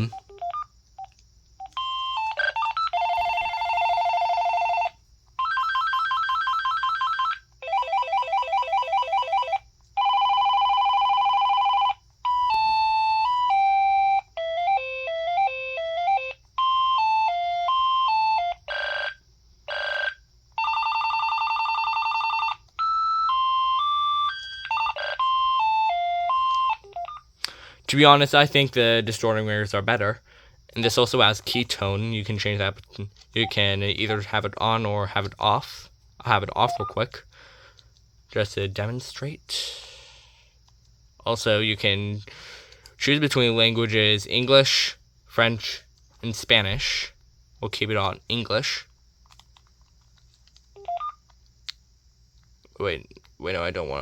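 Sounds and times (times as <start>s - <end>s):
cordless phone ringtones: 1.6s - 27.3s.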